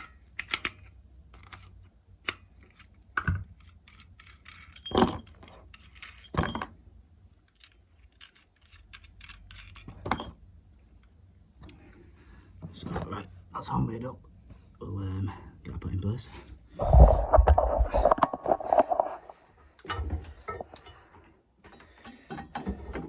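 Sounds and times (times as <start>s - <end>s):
metal fittings clicking and clinking: 0.0s - 6.6s, 7.5s - 10.4s
ringing metal knocks: 10.0s - 10.5s.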